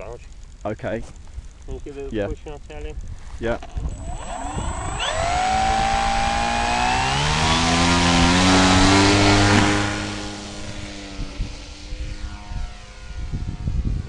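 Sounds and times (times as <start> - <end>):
model plane motor whining: 2.8 - 14.0.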